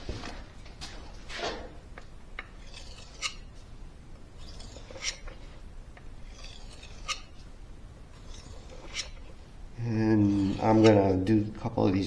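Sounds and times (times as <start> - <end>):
knife blade scraping on whetstone: 2.4 - 5.6, 6.2 - 7.5, 8.1 - 11.6.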